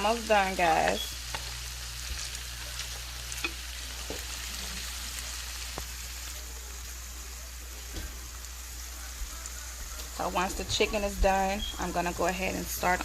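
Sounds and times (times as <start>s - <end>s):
chicken sizzling in a pan: 0.0s - 13.0s.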